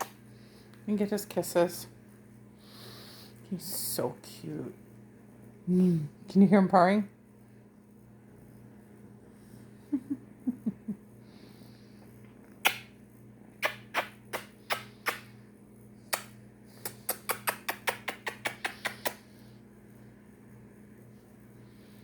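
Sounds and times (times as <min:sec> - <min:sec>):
smacking kiss sounds: 0:00.0 - 0:00.2, 0:12.4 - 0:13.0, 0:13.6 - 0:15.4, 0:16.1 - 0:19.3.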